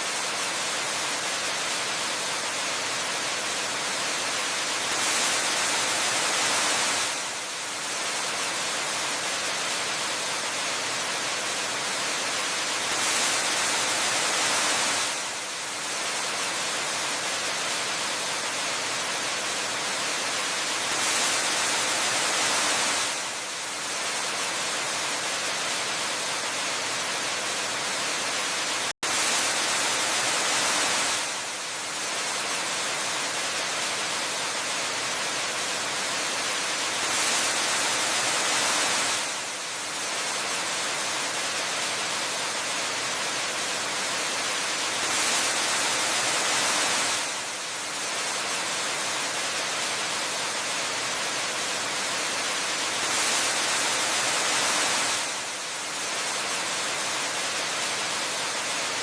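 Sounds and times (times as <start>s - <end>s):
waterfall rushing water: 0.0s - 59.0s.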